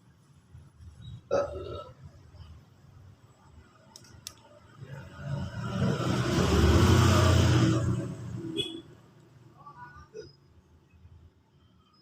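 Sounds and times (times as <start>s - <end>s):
person belching: 1.3s - 2.0s.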